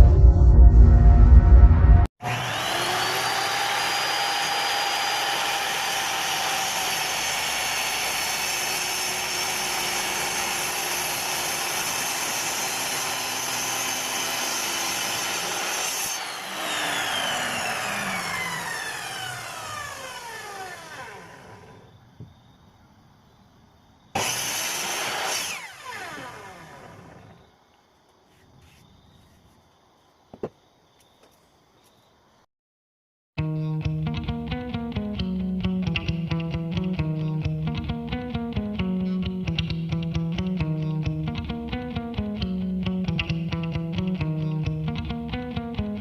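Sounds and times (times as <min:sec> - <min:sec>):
power tool whining: 0:02.2 - 0:22.0, 0:24.2 - 0:27.5.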